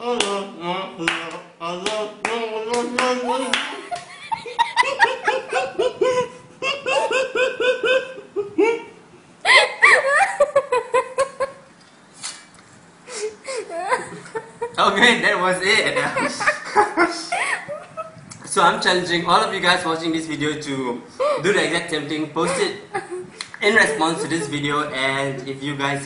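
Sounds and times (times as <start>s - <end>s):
hand claps: 1.1s - 4.2s
people laughing hard: 3.7s - 11.6s, 15.7s - 18.1s, 22.4s - 24.7s.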